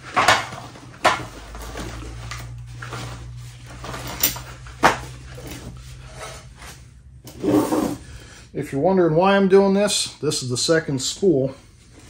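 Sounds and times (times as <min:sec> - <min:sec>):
chain clinking and rattling: 0:03.7 - 0:05.8.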